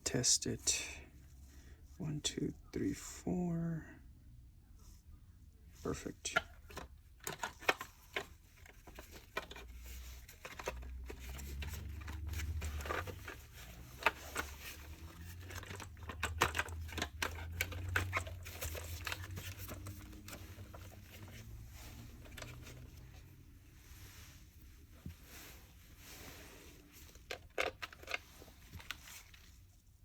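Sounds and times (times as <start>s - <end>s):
plastic parts clicking and tapping: 6.3s - 21.4s, 22.2s - 23.0s, 27.1s - 29.4s.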